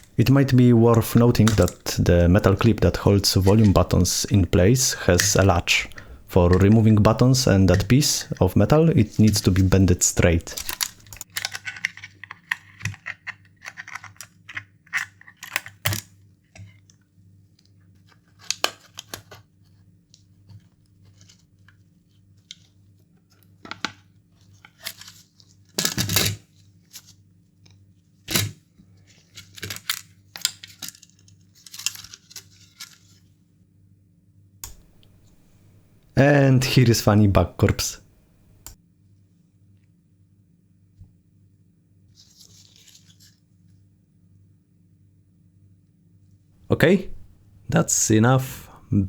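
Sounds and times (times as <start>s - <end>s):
small tools clicking on plastic: 1.0s - 4.1s, 9.0s - 17.0s.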